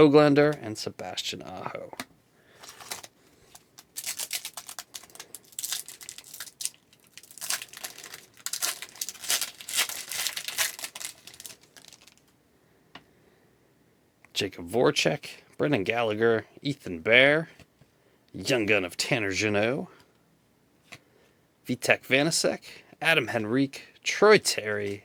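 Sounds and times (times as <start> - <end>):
cards handled: 1.9 - 12.2
card pack wrapper crinkling and tearing: 2.6 - 12.3.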